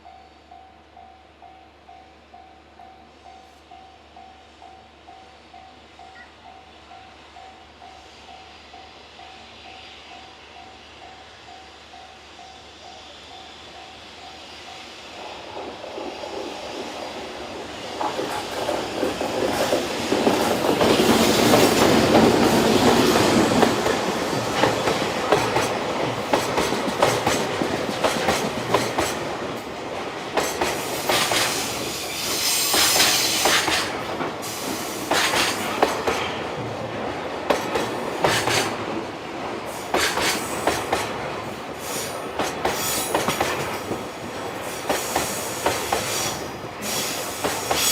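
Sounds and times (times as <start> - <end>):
freight train passing: 0.0 - 47.9
wheels clacking over rail joints: 17.9 - 31.8.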